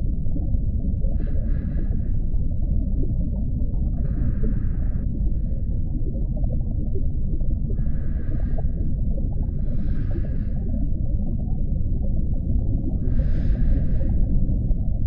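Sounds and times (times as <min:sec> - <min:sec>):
low underwater rumble: 0:00.0 - 0:15.0.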